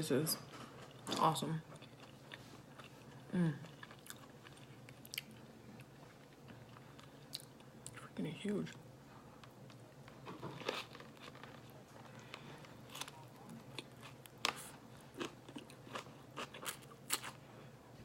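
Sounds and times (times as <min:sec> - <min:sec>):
crunchy chewing: 0:01.7 - 0:08.0, 0:09.4 - 0:17.4.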